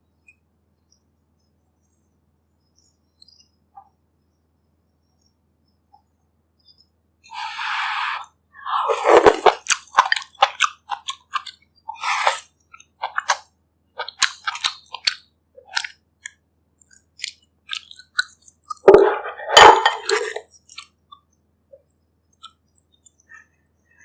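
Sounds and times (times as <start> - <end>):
chewing food: 9.1 - 19.3, 20.0 - 21.3.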